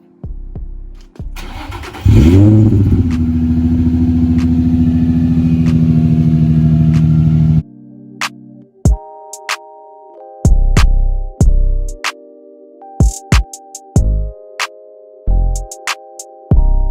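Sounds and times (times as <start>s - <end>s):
starter motor cranking: 1.4s - 3.2s
car engine revving and idling: 1.4s - 7.6s.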